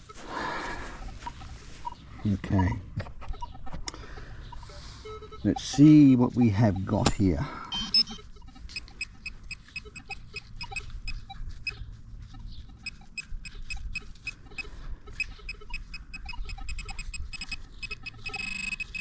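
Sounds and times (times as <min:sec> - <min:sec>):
rustling handling noise: 0:00.0 - 0:03.0
metal detector beeping: 0:00.0 - 0:19.0.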